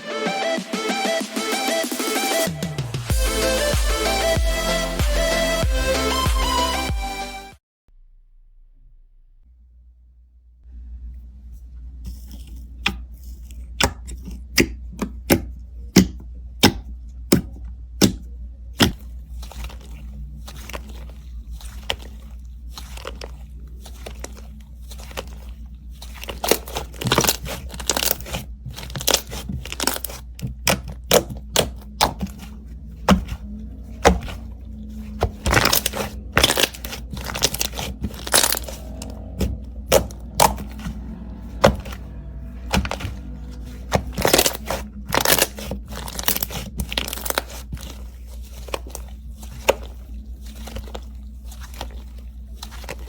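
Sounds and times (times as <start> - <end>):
low hum: 7.9 - 12.5, 15.5 - 53.0
slime pops and crackles: 26.1 - 32.5, 35.2 - 40.9, 43.9 - 48.0.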